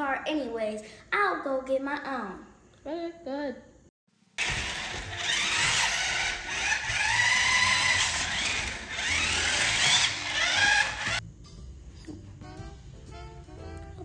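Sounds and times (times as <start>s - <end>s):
toy car electric motor whining: 4.4s - 11.2s.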